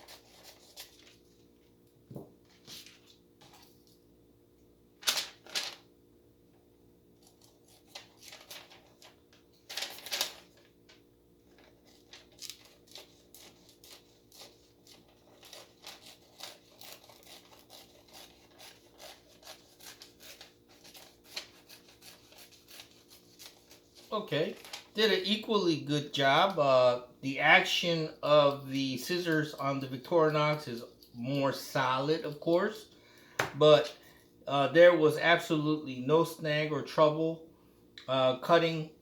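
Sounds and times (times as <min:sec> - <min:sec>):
scissors snipping paper: 0:11.9 - 0:24.9.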